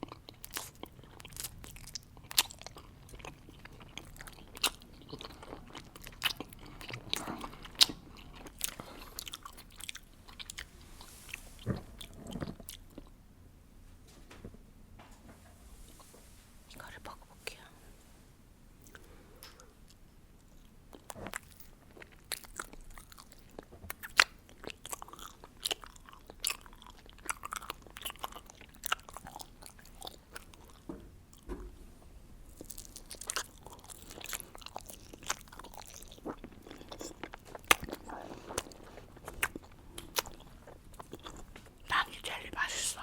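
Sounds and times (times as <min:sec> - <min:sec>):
biting and chewing gummy: 0:00.0 - 0:13.2, 0:18.8 - 0:31.5, 0:32.5 - 0:43.0.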